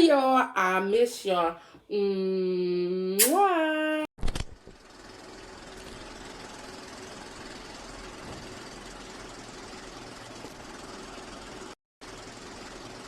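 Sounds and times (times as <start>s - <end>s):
machine hum: 4.8s - 13.0s.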